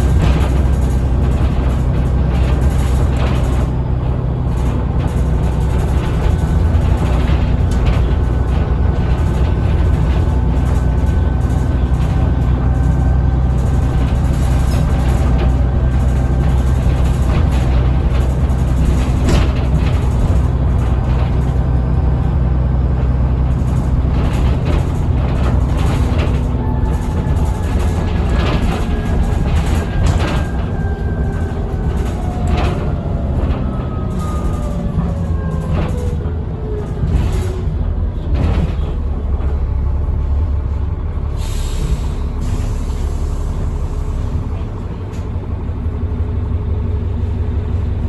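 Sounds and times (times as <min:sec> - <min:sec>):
bus diesel engine running: 0:00.0 - 0:48.0
air hiss: 0:41.4 - 0:43.5.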